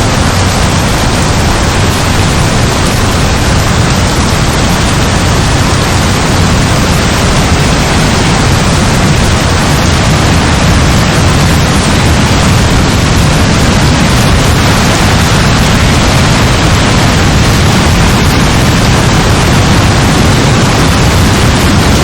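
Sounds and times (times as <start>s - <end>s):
heavy rain falling: 0.0s - 22.0s.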